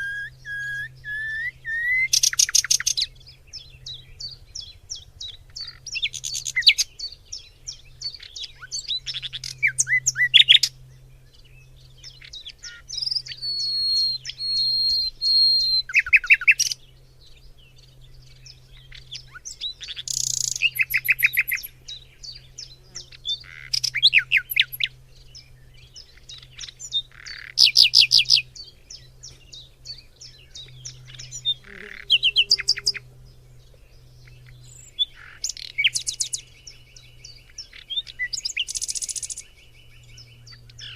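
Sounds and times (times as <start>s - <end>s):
bird whistling steady note: 0.0s - 10.7s, 12.1s - 16.8s, 23.4s - 33.1s
birds chirping and trilling: 0.0s - 40.9s
faint low hum: 0.0s - 40.9s.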